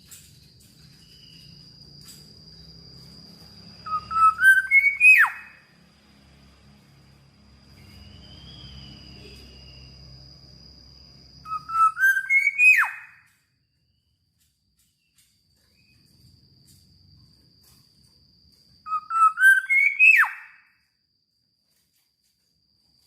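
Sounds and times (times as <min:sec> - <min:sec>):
oriole fluty whistled song: 0:00.8 - 0:05.7, 0:07.7 - 0:10.0, 0:11.4 - 0:13.4, 0:18.8 - 0:20.8.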